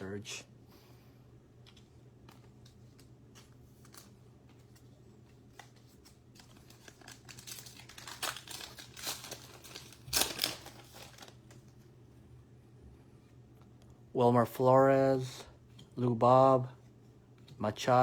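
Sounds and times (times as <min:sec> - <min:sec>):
foil wrapper crinkling and tearing: 0:05.5 - 0:11.7.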